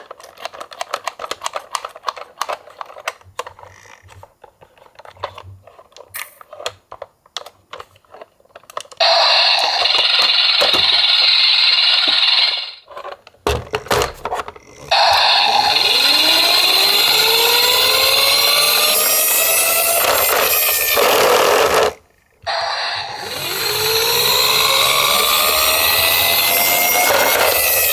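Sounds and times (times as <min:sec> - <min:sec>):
toy cars clicking and rattling: 0:00.0 - 0:27.9
loud steady whirring: 0:09.0 - 0:12.8, 0:13.5 - 0:27.9
rising whine: 0:14.7 - 0:27.9.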